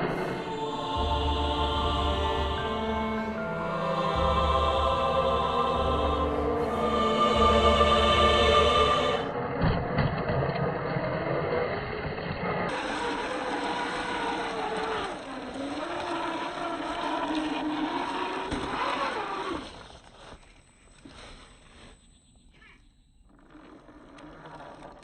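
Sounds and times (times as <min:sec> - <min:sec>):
rc car motor whining: 0:12.7 - 0:20.3.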